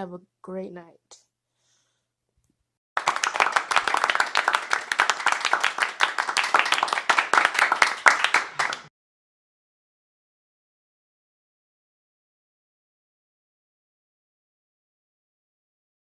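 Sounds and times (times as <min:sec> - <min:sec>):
hand claps: 0:03.0 - 0:08.9.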